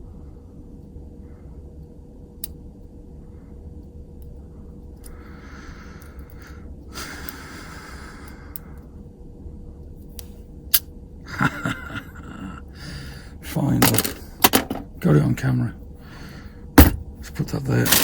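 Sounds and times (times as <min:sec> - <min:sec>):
hissing breaths: 0:05.0 - 0:09.0, 0:12.4 - 0:13.4, 0:16.0 - 0:16.7.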